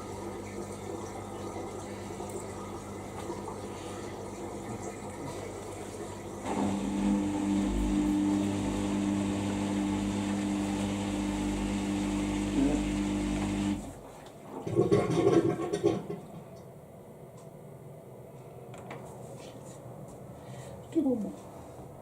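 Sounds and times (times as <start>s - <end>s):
washing machine pump humming: 0.0s - 14.9s.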